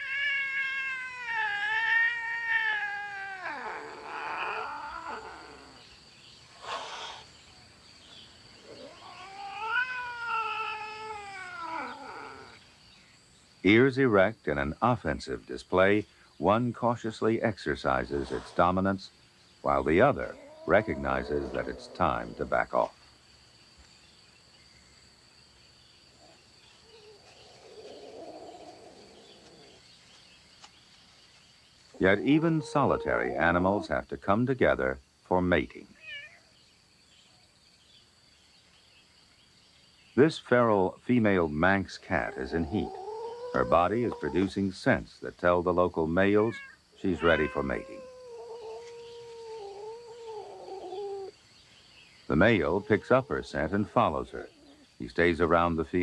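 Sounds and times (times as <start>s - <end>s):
cats yowling: 0.0s - 5.8s, 8.6s - 12.6s, 19.7s - 22.8s, 27.0s - 29.8s, 32.0s - 34.1s, 36.0s - 36.4s, 42.1s - 44.7s, 45.9s - 51.3s, 52.3s - 54.8s
cat growling: 0.0s - 5.9s, 8.6s - 12.6s, 20.0s - 22.8s, 27.7s - 29.8s, 32.0s - 33.9s, 42.1s - 44.6s, 46.4s - 51.3s, 52.4s - 54.8s
high insect trill: 0.0s - 56.0s.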